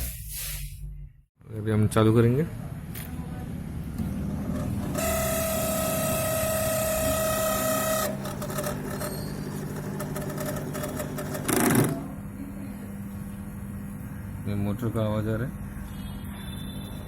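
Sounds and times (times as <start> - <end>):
microwave hum: 2.6 - 17.0
microwave fan motor whining: 3.3 - 17.0.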